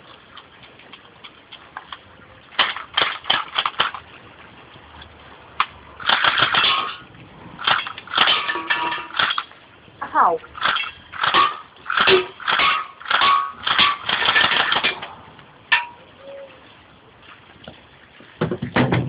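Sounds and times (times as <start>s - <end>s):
metallic clattering: 5.6s - 9.6s, 10.5s - 16.1s
bb gun shots: 10.6s - 15.1s.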